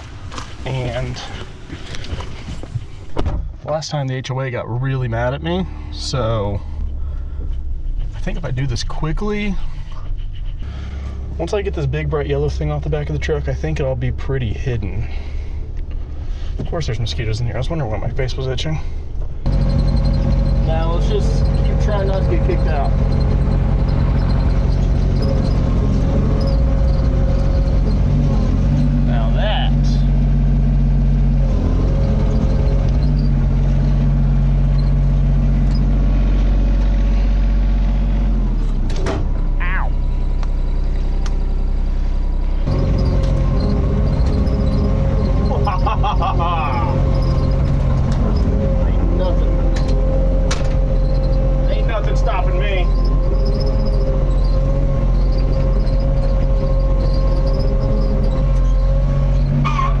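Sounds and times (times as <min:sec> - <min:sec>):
vehicle engine running: 0:00.0 - 0:03.0, 0:04.2 - 1:00.0.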